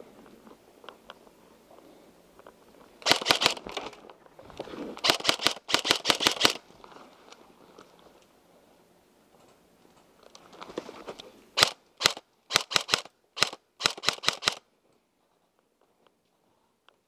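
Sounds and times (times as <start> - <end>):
rustling: 0.0 - 16.7
airsoft gun shots: 3.0 - 3.7, 5.0 - 6.6, 11.6 - 14.6.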